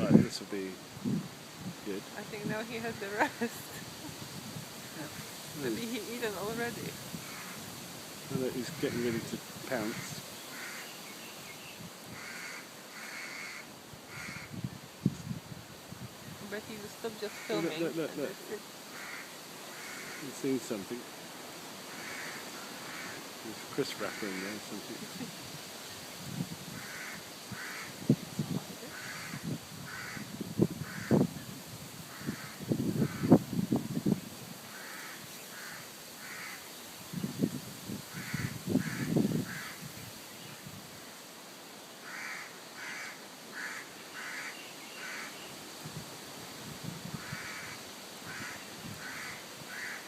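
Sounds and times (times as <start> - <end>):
bird harsh calls: 4.9 - 7.8, 8.7 - 14.6, 17.0 - 20.6, 21.8 - 25.3, 26.7 - 28.2, 28.8 - 31.2, 34.7 - 37.3, 38.1 - 40.6, 42.0 - 45.6, 47.1 - 50.0.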